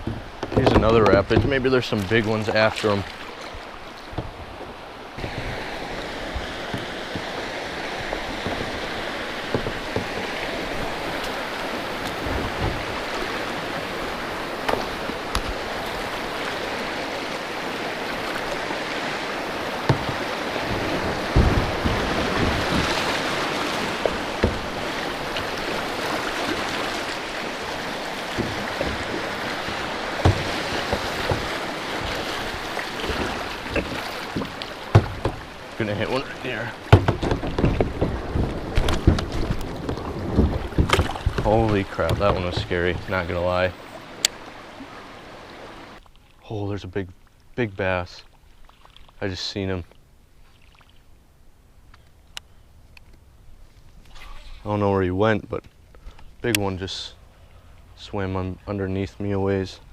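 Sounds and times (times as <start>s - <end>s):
rushing river rapid: 0.0s - 46.0s
short knocks: 19.8s - 25.6s, 28.2s - 43.4s.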